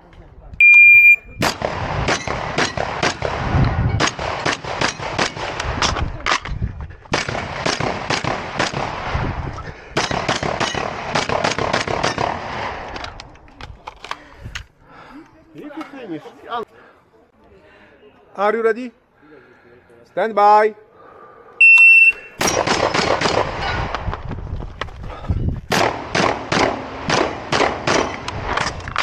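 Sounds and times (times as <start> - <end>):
shotgun shots: 1.4 - 6.0, 7.1 - 9.2, 10.0 - 12.9, 22.4 - 24.0, 25.7 - 29.0.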